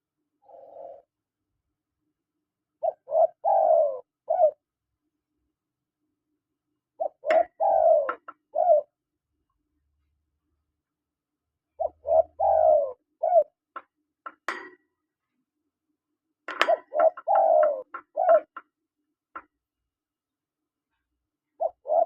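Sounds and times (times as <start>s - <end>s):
dove cooing: 0.4s - 1.1s, 2.8s - 4.6s, 7.0s - 9.0s, 11.7s - 13.8s, 16.5s - 18.7s, 21.5s - 22.0s.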